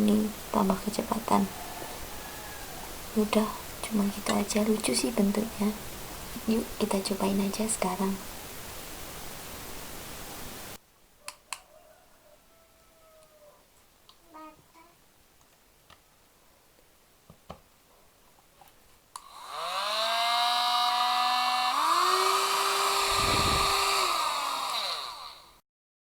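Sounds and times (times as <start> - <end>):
hair dryer motor whine: 19.2 - 25.6.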